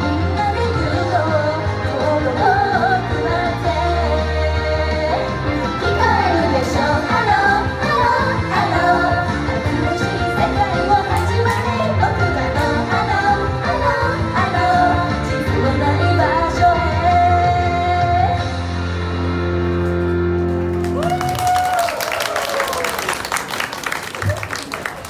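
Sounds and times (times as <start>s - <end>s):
pop song with singing: 0.0s - 18.6s
crowd shouting and cheering: 19.3s - 25.0s.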